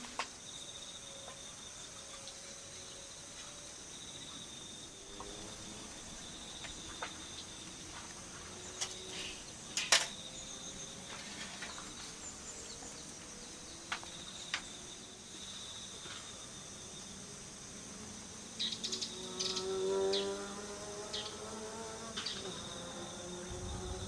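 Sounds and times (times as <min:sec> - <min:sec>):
crickets trilling: 0:00.0 - 0:24.0.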